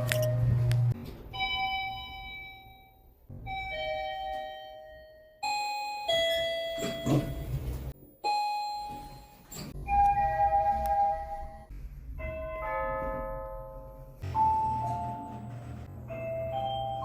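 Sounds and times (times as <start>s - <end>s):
elevator arrival chimes: 14.2s - 17.0s.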